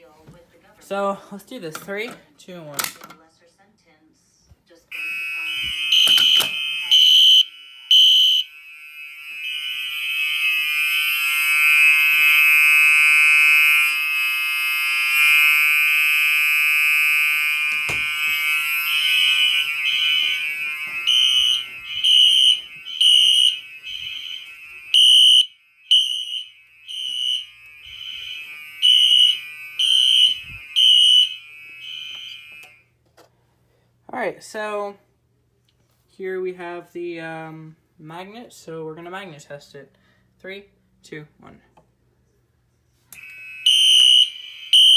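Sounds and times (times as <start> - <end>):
fire alarm horns: 4.9 - 33.0, 43.1 - 44.9.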